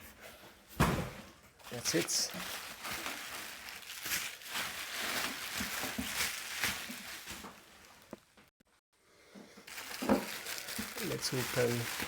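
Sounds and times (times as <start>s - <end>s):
packaging rustling and crinkling: 1.6s - 8.4s, 9.6s - 12.0s.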